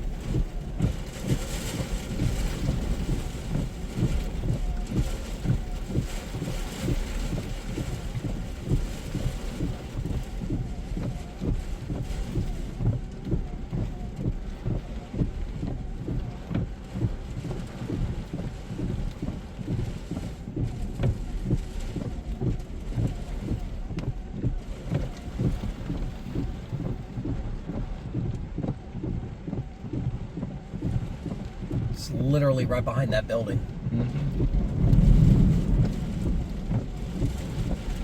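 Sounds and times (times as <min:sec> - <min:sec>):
heavy rain hiss: 0:31.2 - 0:38.0
wind buffeting microphone: 0:33.6 - 0:38.0.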